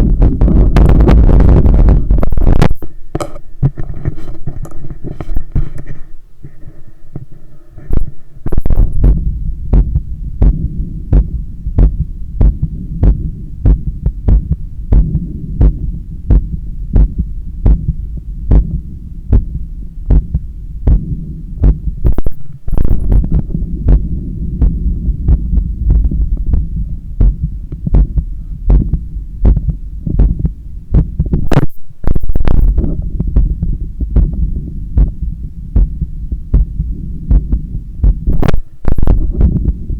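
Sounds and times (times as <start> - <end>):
heartbeat through stethoscope: 0.0 - 2.9, 7.2 - 39.9
low steady rumble: 0.0 - 39.9
stethoscope scraping on skin: 1.6 - 8.9.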